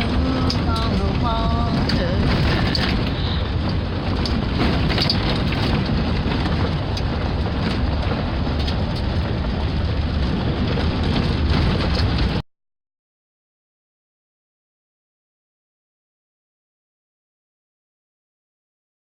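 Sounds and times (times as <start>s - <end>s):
car road and wind noise: 0.0s - 12.4s.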